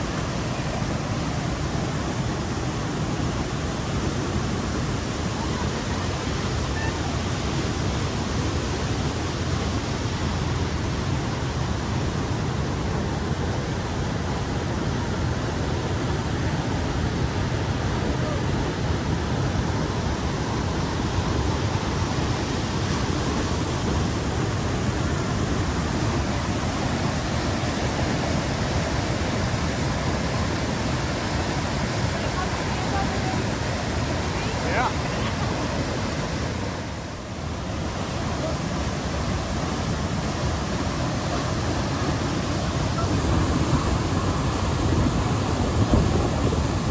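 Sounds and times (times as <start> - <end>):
waterfall crashing: 0.0 - 46.9.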